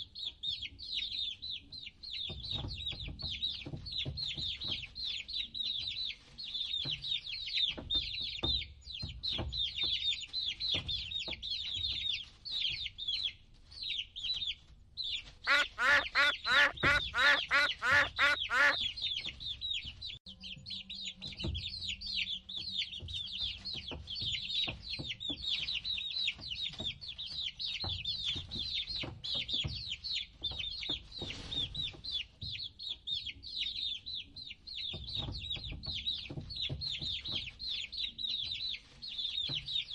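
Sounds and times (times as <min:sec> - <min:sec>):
baby chicks peeping: 0:00.2 - 0:39.9
louder lower quick calls: 0:15.5 - 0:18.8.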